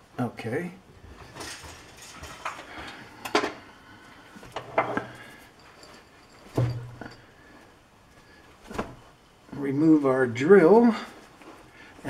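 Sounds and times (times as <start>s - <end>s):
metal tooling clanking: 4.6s - 7.4s.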